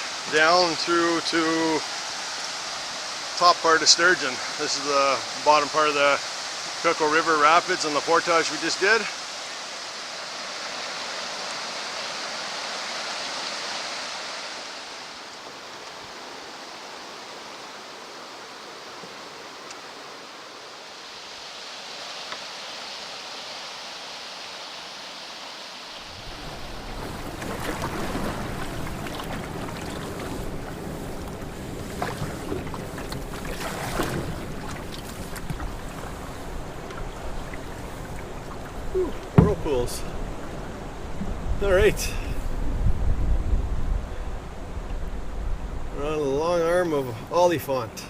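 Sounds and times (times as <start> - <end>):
water rushing over rapids: 0.0 - 43.2
water splashing: 26.0 - 42.6
wind rumbling on microphone: 26.0 - 46.6
canoe knocking: 26.2 - 41.5.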